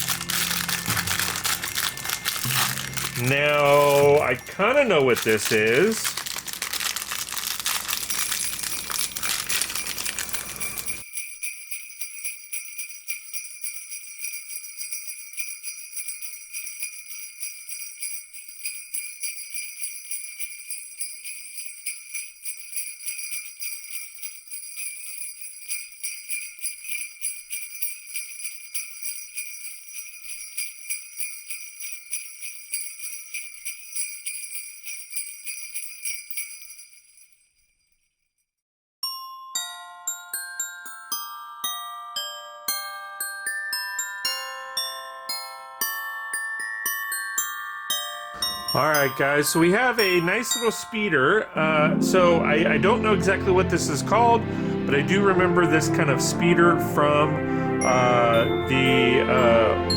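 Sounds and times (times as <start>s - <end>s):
crinkling rustling noise: 0.0s - 11.0s
jingle bells shaking: 0.0s - 38.1s, 48.0s - 59.9s.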